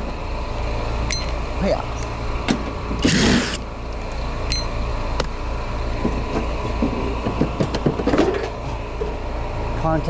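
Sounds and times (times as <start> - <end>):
air conditioner units humming: 0.0 - 10.0
loud scrape: 3.0 - 3.6.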